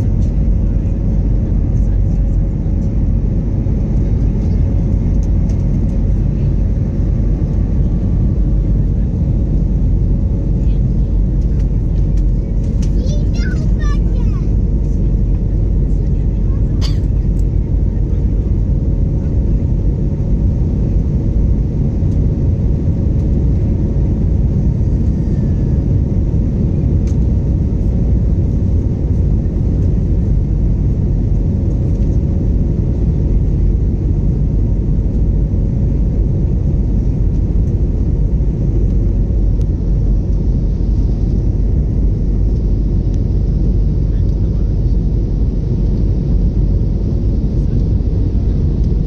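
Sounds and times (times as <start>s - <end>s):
airplane cabin engine rumble: 0.0s - 49.0s.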